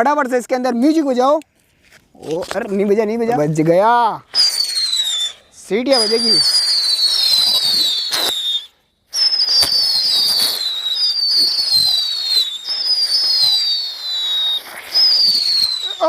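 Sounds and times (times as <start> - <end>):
whistling firework: 4.2 - 16.0
firework cracks: 4.3 - 16.0.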